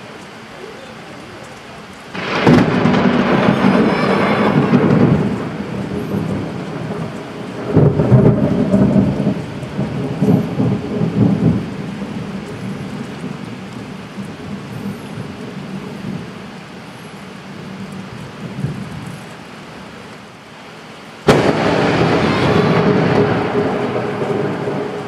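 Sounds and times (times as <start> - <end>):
heavy rain: 0.0 - 25.0
lightning crack: 2.0 - 12.6, 21.2 - 25.0
rolling thunder: 2.0 - 16.4, 21.3 - 25.0.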